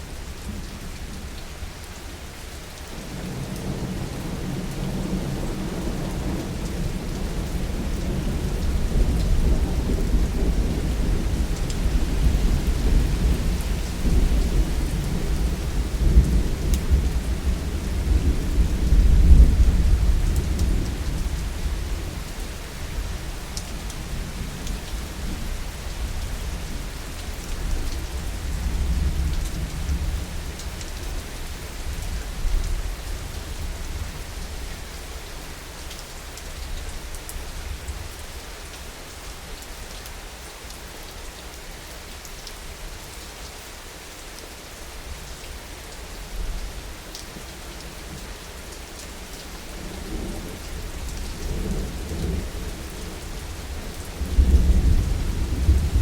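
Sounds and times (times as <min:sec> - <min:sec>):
heavy rain falling: 0:00.0 - 0:56.0
low roll of thunder: 0:03.3 - 0:22.1, 0:49.8 - 0:56.0.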